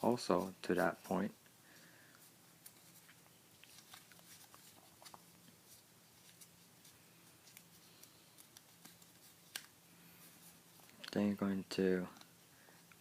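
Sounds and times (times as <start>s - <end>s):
faint steady hum: 0.0s - 13.0s
paper crinkling while folded: 2.6s - 9.7s.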